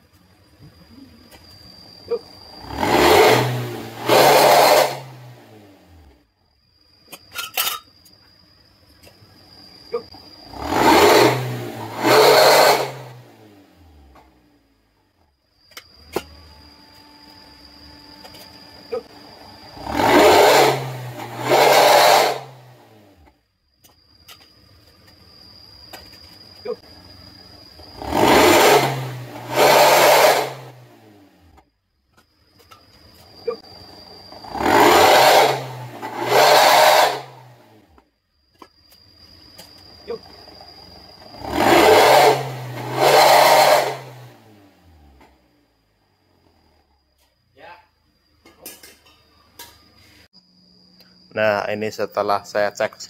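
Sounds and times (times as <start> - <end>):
car engine revving: 2.1 - 6.2, 10.0 - 14.9, 17.9 - 23.3, 26.6 - 31.6, 33.4 - 38.0, 40.1 - 45.5.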